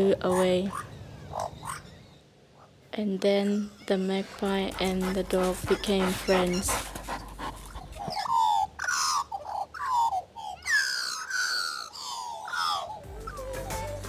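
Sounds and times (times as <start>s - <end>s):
high animal calls gliding down: 10.5s - 13.5s.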